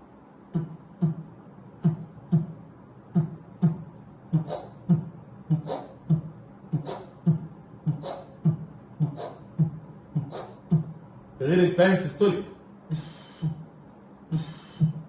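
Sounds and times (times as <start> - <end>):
mouth imitating heartbeat: 0.5 - 11.1, 12.9 - 13.7, 14.3 - 15.0.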